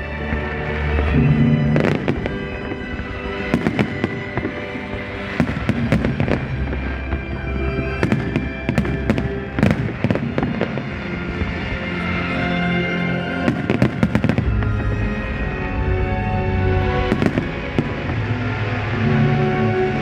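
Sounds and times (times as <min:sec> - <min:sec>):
music with sustained notes: 0:00.0 - 0:20.0
firework bangs: 0:01.1 - 0:07.0, 0:07.9 - 0:11.6, 0:13.4 - 0:15.1, 0:17.0 - 0:18.3.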